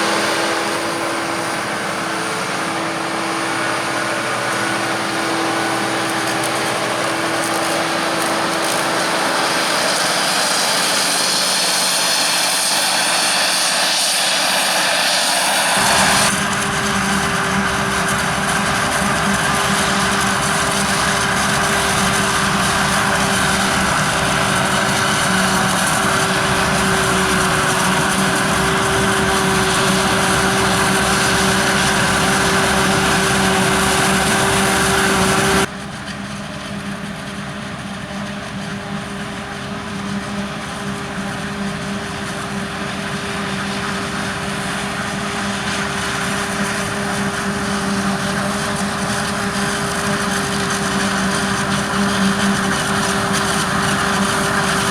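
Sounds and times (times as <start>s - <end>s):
high machine whine: 0.0s - 35.7s
heavy machine engine drone: 0.0s - 54.9s.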